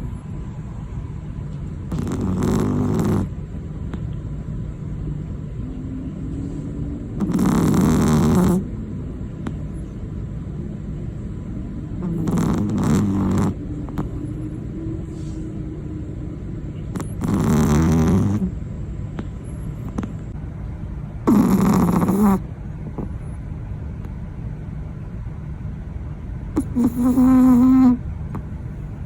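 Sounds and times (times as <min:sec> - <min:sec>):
steady low hum: 0:00.0 - 0:29.0
dog snoring: 0:01.9 - 0:03.4, 0:07.0 - 0:08.8, 0:11.9 - 0:15.4, 0:16.8 - 0:18.6, 0:19.2 - 0:20.4, 0:21.2 - 0:23.2, 0:26.5 - 0:28.5.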